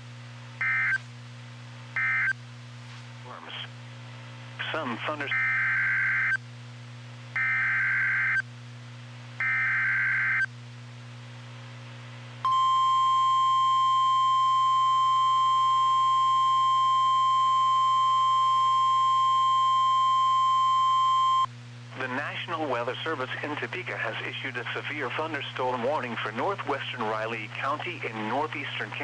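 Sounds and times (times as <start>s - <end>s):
low steady hum: 0.0s - 29.0s
steady warning alarm tone: 12.5s - 21.5s.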